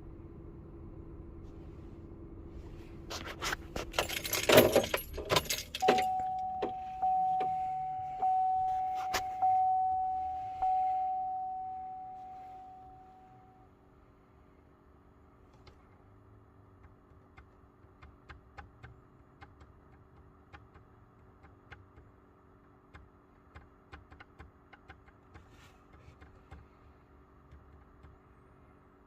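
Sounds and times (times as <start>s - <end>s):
keys jangling: 3.7s - 6.8s
ringing chime: 5.6s - 13.6s.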